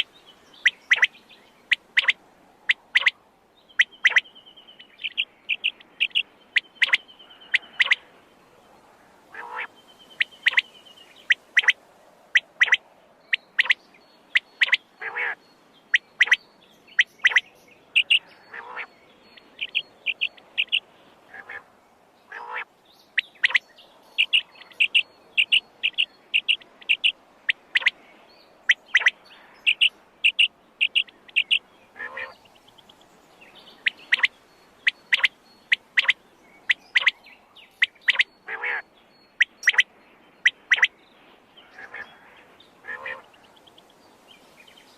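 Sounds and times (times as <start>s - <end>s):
quail calling: 0.6s - 1.1s, 1.7s - 3.2s, 3.8s - 4.2s, 5.0s - 8.1s, 9.3s - 16.4s, 17.0s - 17.4s, 18.0s - 21.7s, 22.3s - 23.6s, 24.2s - 28.0s, 28.7s - 32.4s, 33.8s - 37.2s, 37.8s - 38.8s, 39.4s - 40.9s, 41.6s - 43.8s.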